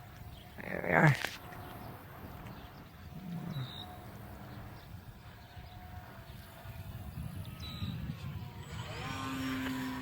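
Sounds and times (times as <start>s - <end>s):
wind buffeting microphone: 0.0s - 10.0s
model airplane motor whine: 5.2s - 10.0s.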